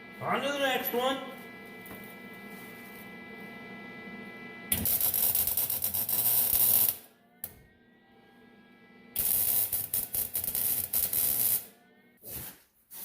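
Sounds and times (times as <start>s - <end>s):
welder arc crackling and buzzing: 0.0s - 7.7s, 9.1s - 11.8s.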